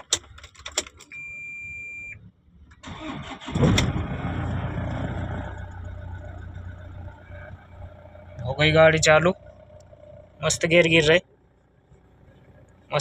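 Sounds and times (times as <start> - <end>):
car engine starting and idling: 0.0 - 13.0
car beep: 1.1 - 2.3.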